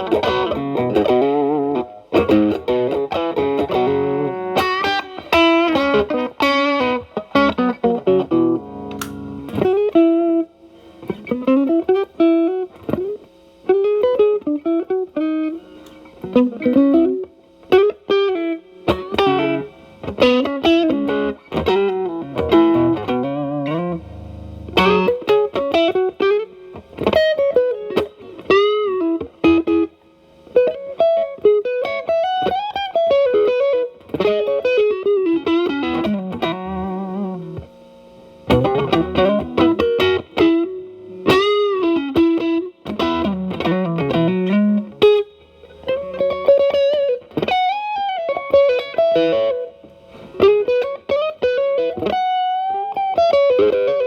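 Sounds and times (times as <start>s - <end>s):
electric guitar blues phrases: 0.0s - 54.0s.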